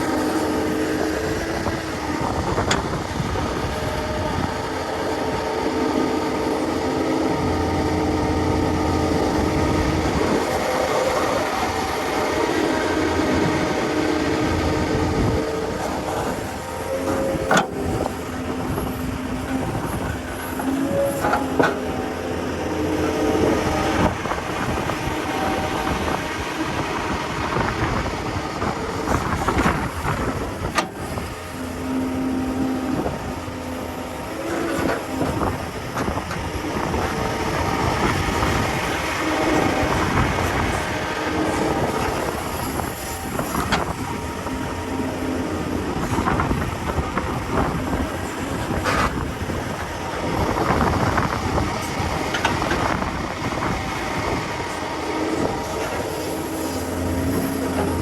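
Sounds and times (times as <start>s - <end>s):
excavator engine and hydraulics: 0.0s - 58.0s.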